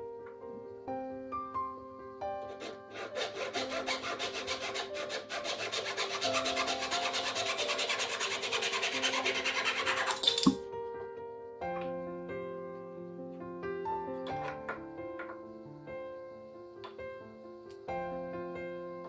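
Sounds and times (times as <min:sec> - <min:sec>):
soft piano music: 0:00.0 - 0:19.0
wood being rasped by hand: 0:02.4 - 0:10.2.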